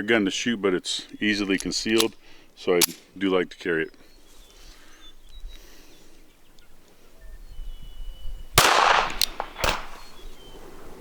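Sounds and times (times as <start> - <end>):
shorter fainter cracks: 8.6 - 10.1
pistol shot: 8.6 - 10.2.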